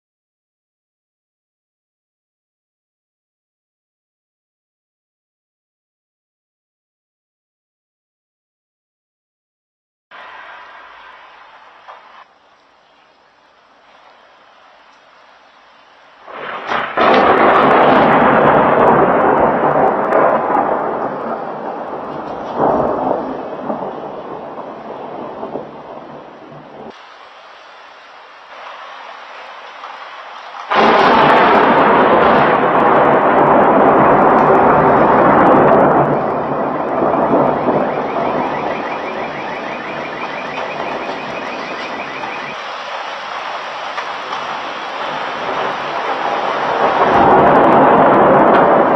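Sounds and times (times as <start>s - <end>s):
thunder crack and rumble: 16.2s - 27.1s, 28.5s - 48.9s
high warbling alarm: 35.0s - 42.8s.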